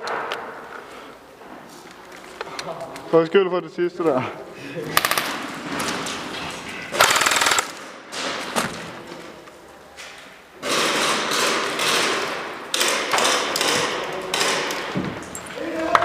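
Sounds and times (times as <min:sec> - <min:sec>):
airsoft guns firing bursts: 0:06.9 - 0:07.9, 0:10.6 - 0:14.9.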